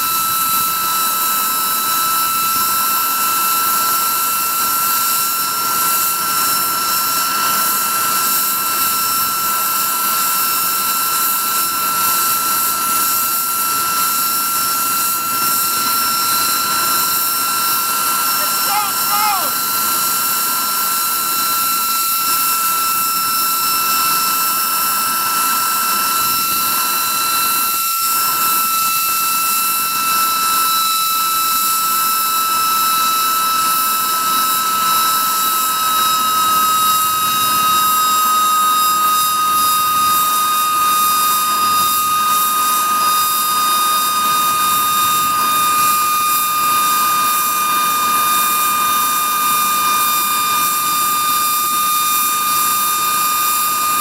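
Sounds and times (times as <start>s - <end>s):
jet noisemaker whistling whine: 0.0s - 54.0s.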